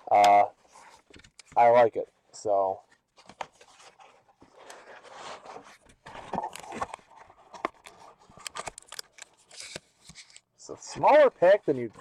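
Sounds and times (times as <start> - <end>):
packaging crinkling and rustling: 3.2 - 10.4.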